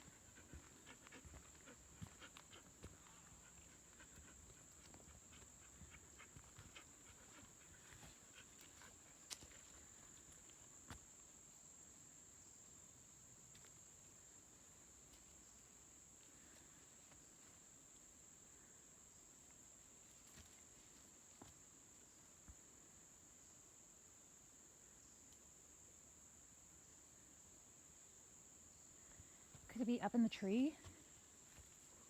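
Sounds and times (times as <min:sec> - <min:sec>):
high insect drone: 0:00.0 - 0:32.0.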